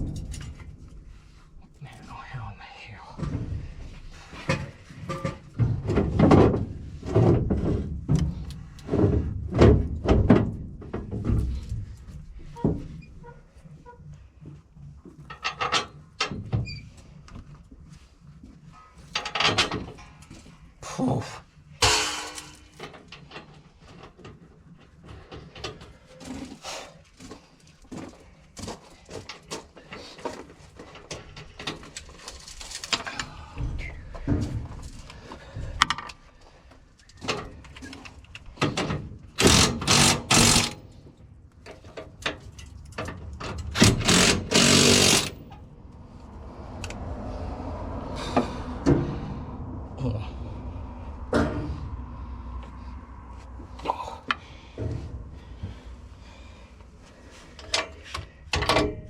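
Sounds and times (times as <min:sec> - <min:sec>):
knocks and clanks on metal: 0:00.0 - 0:01.5, 0:03.2 - 0:16.7, 0:18.8 - 0:20.6, 0:21.7 - 0:26.6, 0:27.9 - 0:36.4, 0:37.1 - 0:41.0, 0:41.6 - 0:45.7, 0:51.2 - 0:52.1, 0:54.3 - 0:55.9, 0:57.5 - 0:59.0
rapid rattling bursts: 0:39.4 - 0:40.9, 0:43.7 - 0:45.6.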